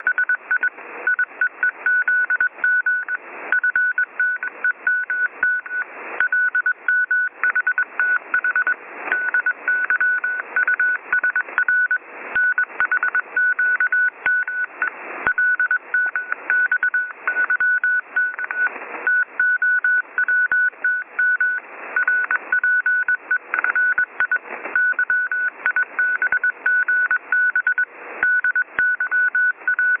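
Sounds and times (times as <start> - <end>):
telephone line beeping: 0.0 - 30.0.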